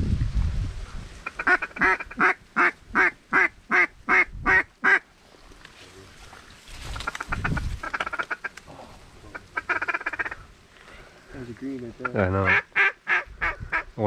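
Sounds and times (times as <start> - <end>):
wind rumbling on microphone: 0.0 - 4.8, 5.4 - 11.6, 12.5 - 14.0
duck call quacks: 1.2 - 5.0, 7.1 - 8.5, 9.3 - 10.4, 12.0 - 13.9.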